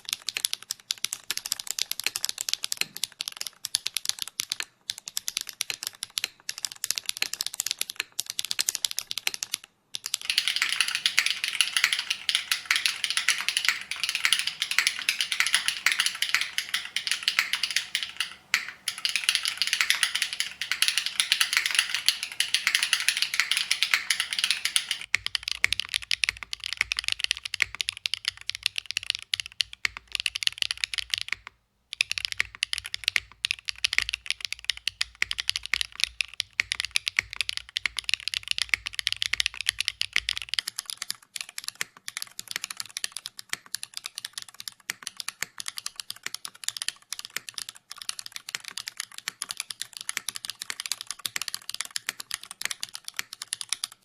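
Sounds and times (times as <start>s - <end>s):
mechanical keyboard typing: 10.0s - 40.7s.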